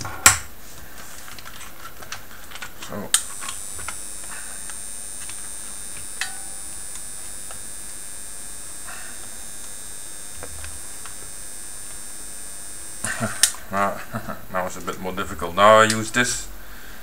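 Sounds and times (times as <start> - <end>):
desoldering gun hissing: 2.5 - 17.0
sharp click: 4.7 - 7.1.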